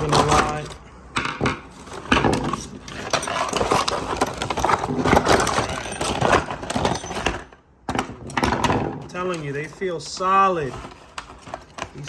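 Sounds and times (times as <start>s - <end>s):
plastic packaging rustling: 0.0s - 0.9s, 1.6s - 12.0s
screwdrivers clicking and knocking: 0.0s - 9.6s.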